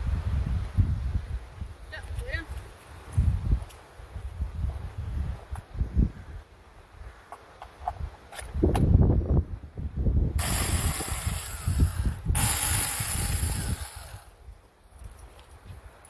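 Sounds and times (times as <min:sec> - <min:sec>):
low buffeting rumble: 0:09.0 - 0:14.5
chainsaw cutting branch: 0:10.4 - 0:14.4.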